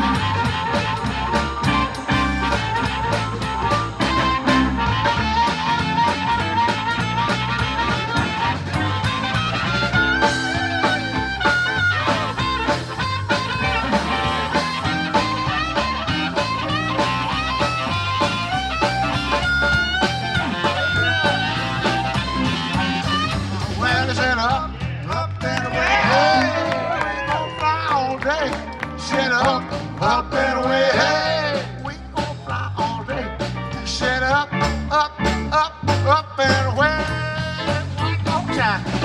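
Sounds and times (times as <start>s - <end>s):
bending lead guitar solo: 0.0s - 23.9s, 25.6s - 29.0s
bass guitar groove: 0.0s - 39.0s
drums: 0.0s - 39.0s.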